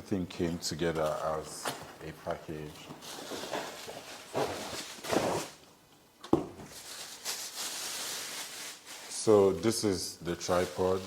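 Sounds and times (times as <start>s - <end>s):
packaging rustling: 0.8s - 5.6s, 6.6s - 9.7s, 10.4s - 11.0s.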